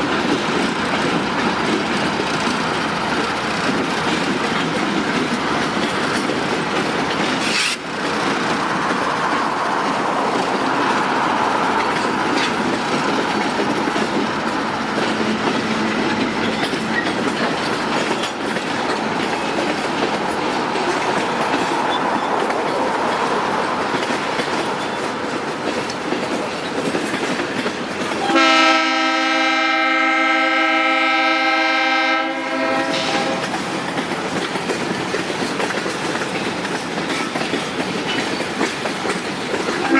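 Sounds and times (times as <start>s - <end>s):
freight train wheels clacking: 0.0s - 39.9s
diesel locomotive horn chord: 28.2s - 33.5s.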